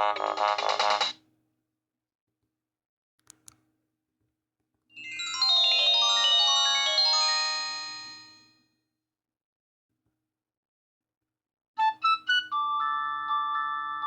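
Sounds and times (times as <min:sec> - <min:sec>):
short clicks: 0:03.2 - 0:03.6
bell-like phone ringtone: 0:05.0 - 0:08.6.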